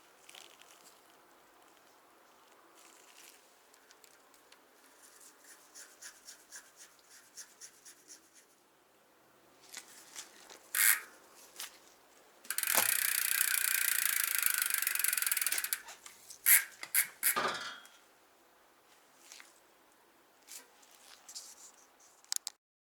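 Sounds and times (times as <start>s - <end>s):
bicycle freewheel ratchet clicking: 10.7s - 11.1s, 12.5s - 17.5s.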